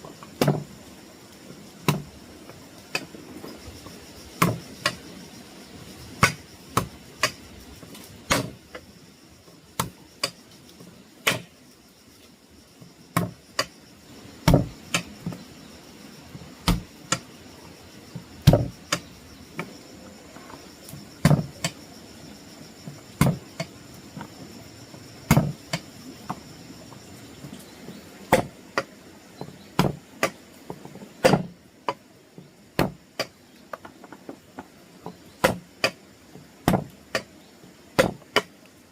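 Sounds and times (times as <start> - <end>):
crickets trilling: 0.0 - 38.9
sharp chopping knocks: 1.8 - 2.1, 4.4 - 5.0, 8.3 - 8.6, 11.2 - 11.5, 14.4 - 15.1, 16.6 - 17.2, 18.4 - 19.0, 21.2 - 21.5, 23.2 - 23.7, 25.3 - 25.8, 28.3 - 28.9, 29.8 - 30.4, 31.2 - 31.5, 32.8 - 33.3, 35.4 - 36.0, 36.6 - 37.3, 38.0 - 38.5.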